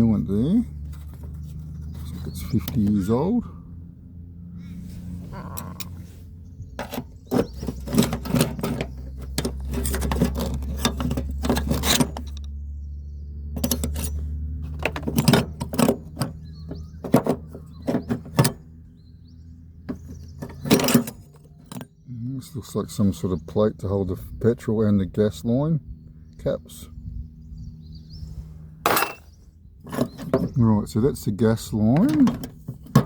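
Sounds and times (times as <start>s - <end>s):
low steady rumble: 0.0s - 33.0s
hand tools clinking on metal: 13.6s - 14.2s, 14.8s - 16.3s, 20.4s - 21.9s, 28.9s - 29.3s.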